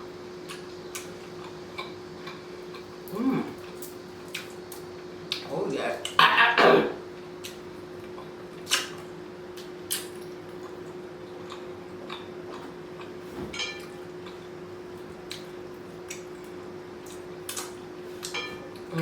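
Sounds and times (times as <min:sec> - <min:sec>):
faint hum: 0:00.0 - 0:19.0
chewing clicks and smacks: 0:00.5 - 0:06.2, 0:07.4 - 0:13.1, 0:15.2 - 0:18.4.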